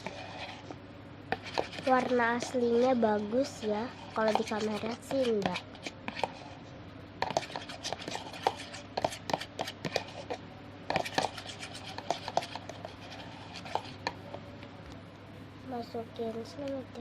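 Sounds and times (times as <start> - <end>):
spoon scraping a bowl: 0.0 - 6.6, 7.2 - 14.2.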